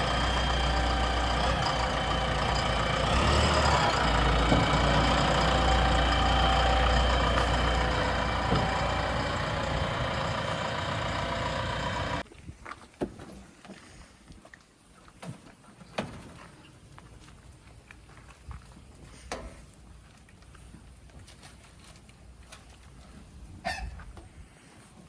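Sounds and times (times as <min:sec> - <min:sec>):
heavy diesel engine running: 0:00.0 - 0:12.2.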